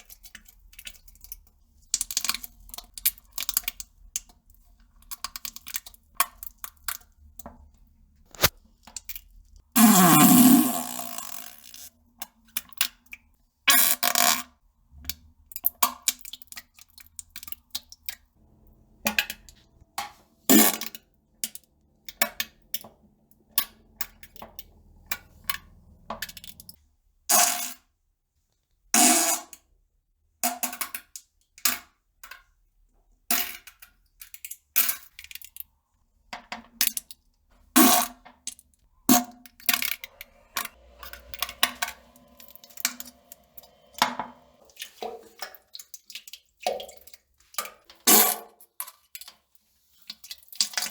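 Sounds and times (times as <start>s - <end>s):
flatulence bursts: 9.8s - 11.7s.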